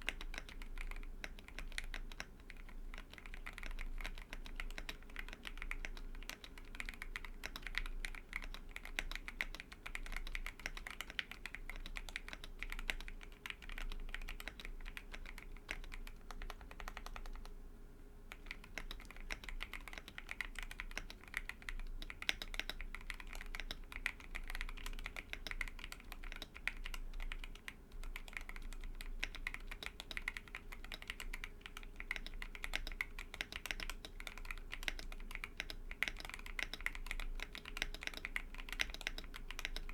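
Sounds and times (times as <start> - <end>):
mechanical keyboard typing: 0.0 - 17.5, 18.3 - 39.9.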